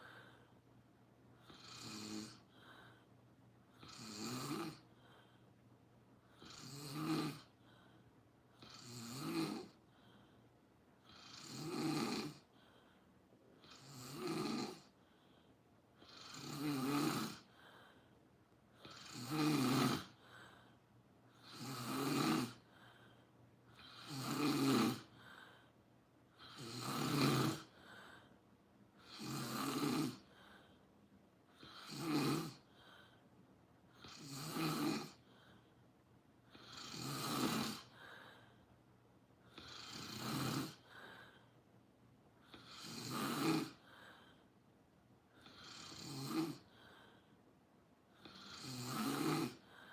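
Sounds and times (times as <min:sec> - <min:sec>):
person snoring: 0:01.4 - 0:03.1, 0:03.7 - 0:05.3, 0:06.3 - 0:07.7, 0:08.6 - 0:10.3, 0:11.0 - 0:12.8, 0:13.6 - 0:15.0, 0:16.0 - 0:18.1, 0:18.8 - 0:23.0, 0:23.7 - 0:25.7, 0:26.3 - 0:28.3, 0:29.0 - 0:30.8, 0:31.5 - 0:33.2, 0:33.9 - 0:35.7, 0:36.4 - 0:38.5, 0:39.5 - 0:41.5, 0:42.4 - 0:44.4, 0:45.3 - 0:47.3, 0:48.1 - 0:49.9.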